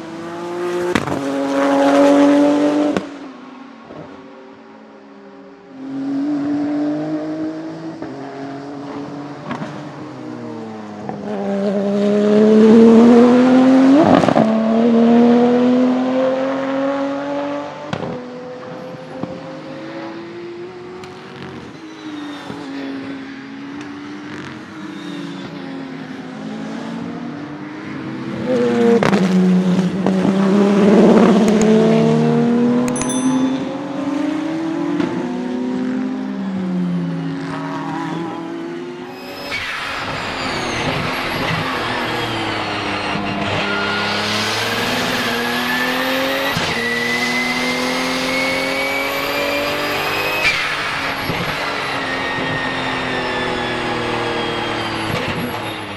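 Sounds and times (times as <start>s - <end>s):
race car engine accelerating: 5.9s - 21.7s, 33.8s - 55.9s.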